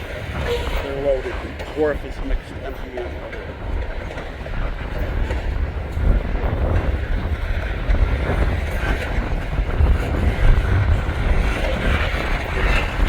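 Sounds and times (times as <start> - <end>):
train wheels rumbling on rails: 0.0 - 13.0
wind buffeting microphone: 0.0 - 13.0.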